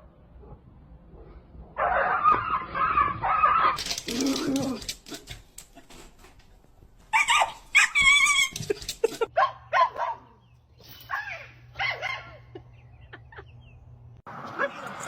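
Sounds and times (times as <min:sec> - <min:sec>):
dog barking and yelping: 0:01.7 - 0:05.3, 0:07.1 - 0:10.3, 0:11.7 - 0:12.4.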